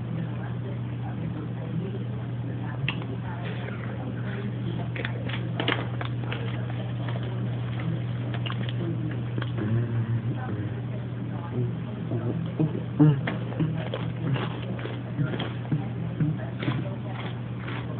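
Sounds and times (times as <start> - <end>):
steady low hum: 0.0 - 17.9
snack crunching and chewing: 4.8 - 9.8, 12.1 - 17.9.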